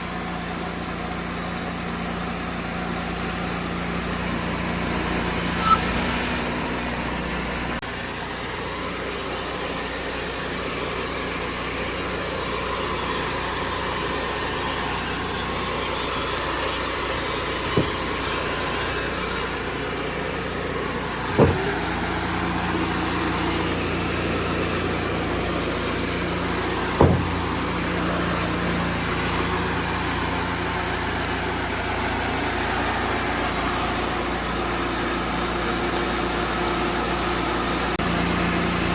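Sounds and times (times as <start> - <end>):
sawmill engine running: 0.0 - 38.9
sharp knocks: 17.6 - 18.2, 21.3 - 21.9, 27.0 - 27.6.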